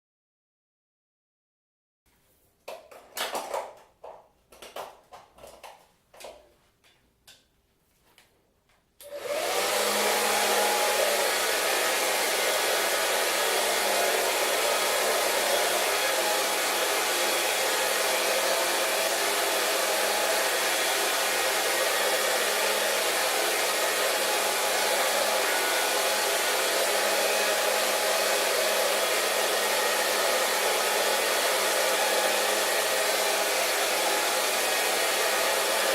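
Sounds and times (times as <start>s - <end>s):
hair dryer blowing: 9.0s - 35.9s.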